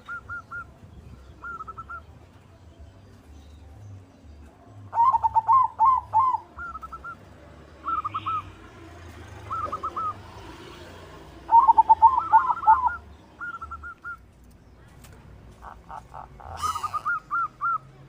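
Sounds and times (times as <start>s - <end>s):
dove cooing: 1.4s - 2.0s, 4.9s - 7.2s, 7.8s - 8.5s, 9.4s - 10.3s, 11.4s - 14.2s, 15.6s - 17.9s.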